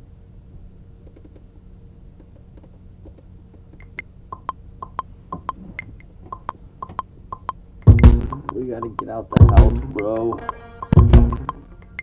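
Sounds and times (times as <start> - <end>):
steady low hum: 0.0 - 12.0
pitched percussion clicks in a beat: 3.8 - 5.6, 6.3 - 11.8.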